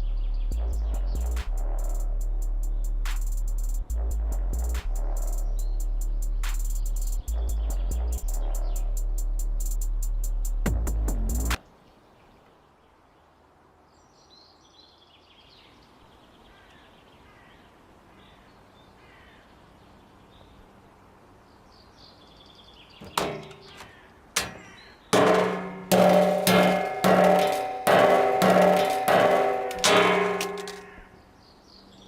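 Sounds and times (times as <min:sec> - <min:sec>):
faint bird calls: 0:15.6 - 0:20.6
loud ringing strikes: 0:24.4 - 0:31.1.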